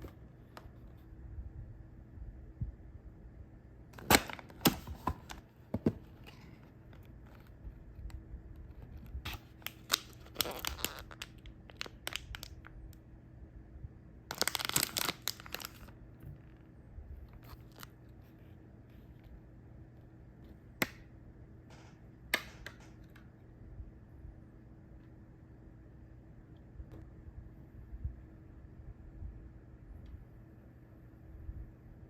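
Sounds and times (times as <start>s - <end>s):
plastic wrapping crinkling and tearing: 9.2s - 12.7s, 14.3s - 16.0s, 17.4s - 18.0s.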